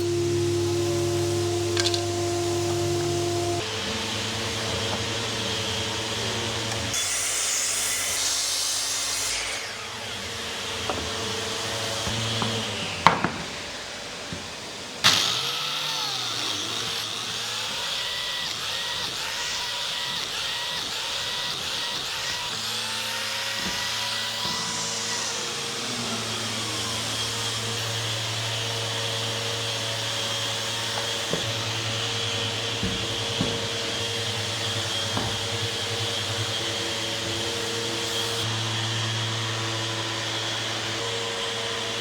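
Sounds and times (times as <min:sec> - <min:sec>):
electric sander on wood: 0:00.0 - 0:42.0
sharp knocks: 0:30.8 - 0:37.6.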